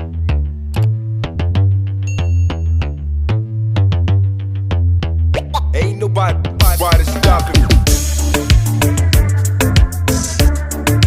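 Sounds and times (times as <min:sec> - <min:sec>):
sustained bass line: 0:00.0 - 0:11.0
electronic music with steady beat: 0:05.4 - 0:11.0.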